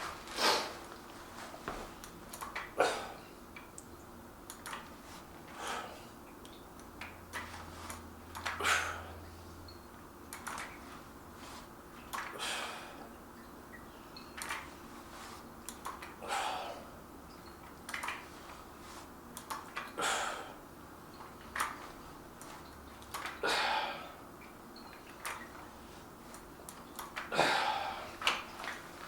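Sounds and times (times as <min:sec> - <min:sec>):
small clicks: 0:04.5 - 0:04.8, 0:10.3 - 0:10.8, 0:19.4 - 0:20.0
person breathing out hard: 0:16.2 - 0:17.0, 0:27.3 - 0:28.2.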